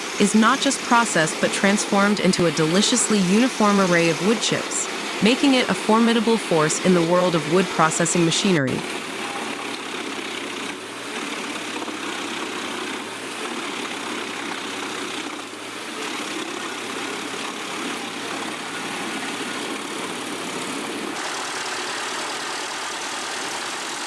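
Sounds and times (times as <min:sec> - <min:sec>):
wood chipper running: 0:00.0 - 0:00.8, 0:04.8 - 0:05.2, 0:08.8 - 0:24.0.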